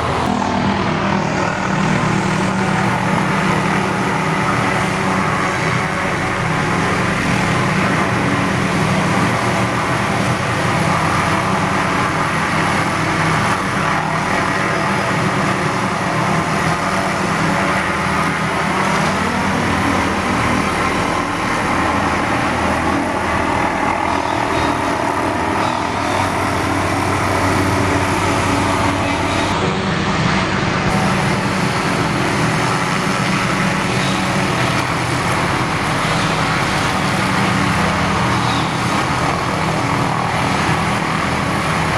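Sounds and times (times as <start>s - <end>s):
helicopter engine and rotors: 0.0s - 41.9s.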